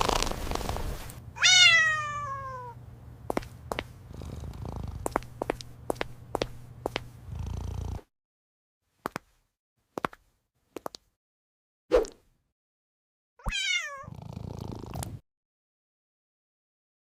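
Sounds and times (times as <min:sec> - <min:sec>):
cat purring: 0:00.0 - 0:01.1, 0:04.0 - 0:05.6, 0:07.1 - 0:08.0, 0:14.0 - 0:15.2
cat meowing: 0:01.4 - 0:02.8, 0:13.4 - 0:14.1.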